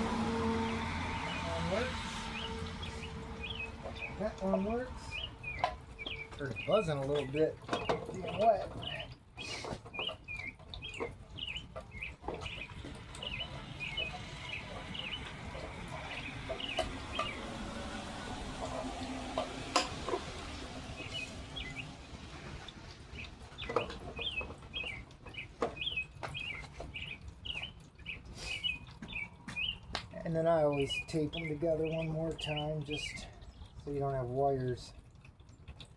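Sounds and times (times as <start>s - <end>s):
birds chirping: 0.0s - 35.9s
handling clicks and knocks: 2.7s - 17.5s, 22.4s - 27.8s.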